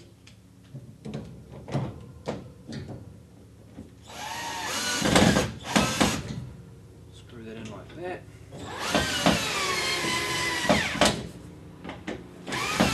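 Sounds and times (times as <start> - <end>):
cordless drill whine: 8.6 - 11.0, 12.5 - 12.9.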